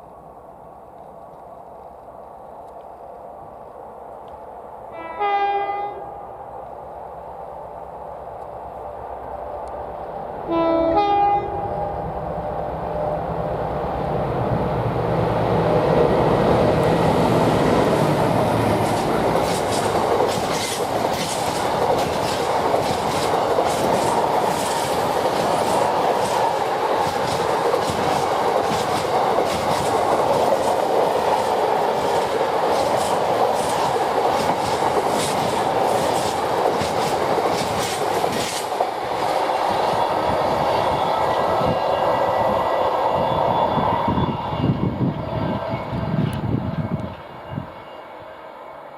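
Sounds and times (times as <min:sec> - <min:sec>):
train rumble: 0:00.0 - 0:48.5
two-tone train horn: 0:04.9 - 0:06.2, 0:10.5 - 0:12.0, 0:39.7 - 0:46.2
wheels clattering over rail joints: 0:18.7 - 0:39.0.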